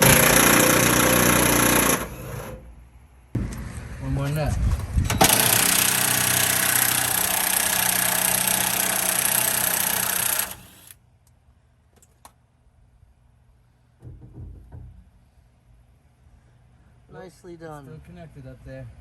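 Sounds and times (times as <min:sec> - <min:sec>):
power wrench running: 0:00.0 - 0:02.6, 0:05.1 - 0:11.0
low knock: 0:14.0 - 0:15.1.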